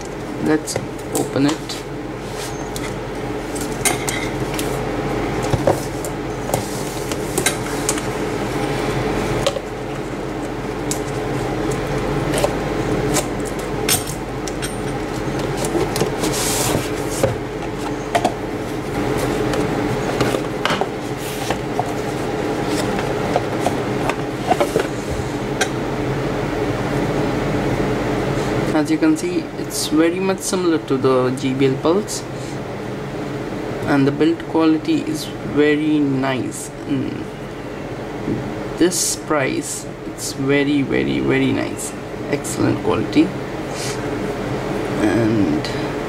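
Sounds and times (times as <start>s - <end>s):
steady background hum: 0.0s - 46.0s.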